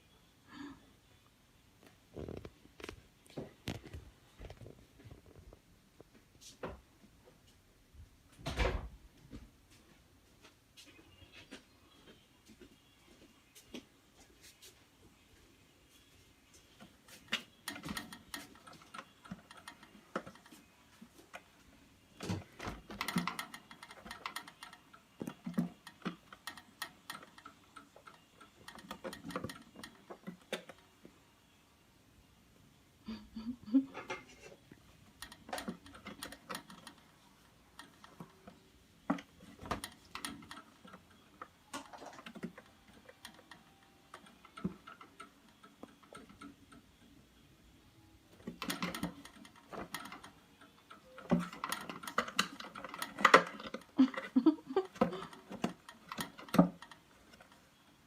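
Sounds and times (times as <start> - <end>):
cats scuffling and tapping: 34.1 - 46.8, 48.3 - 58.0.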